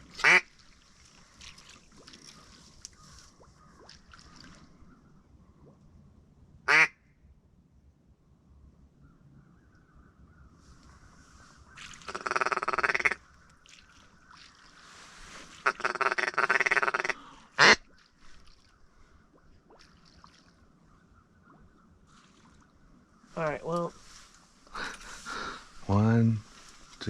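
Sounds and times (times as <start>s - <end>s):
duck quacking: 0.2s - 0.4s, 6.7s - 6.9s, 12.1s - 13.2s, 15.6s - 17.8s.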